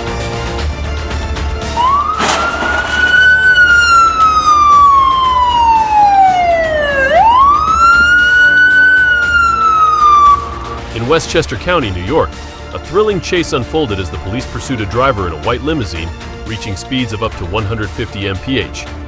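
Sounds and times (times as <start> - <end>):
police siren wailing: 1.7 - 12.3.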